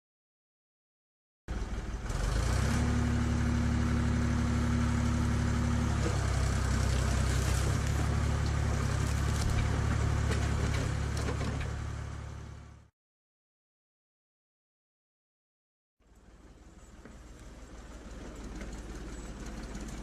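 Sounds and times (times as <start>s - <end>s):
tractor engine running: 1.5s - 12.9s, 16.0s - 20.0s.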